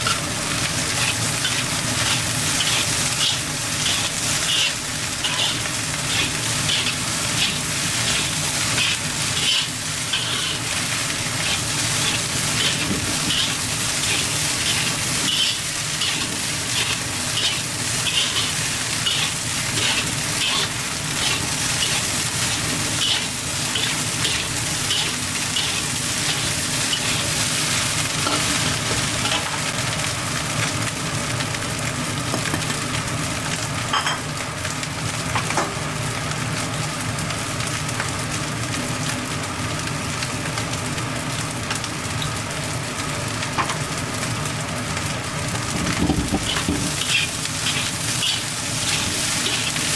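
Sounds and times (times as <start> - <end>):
spatula scraping pan: 0.0 - 28.6, 45.9 - 49.9
rice sizzling in a hot pan: 0.0 - 49.9.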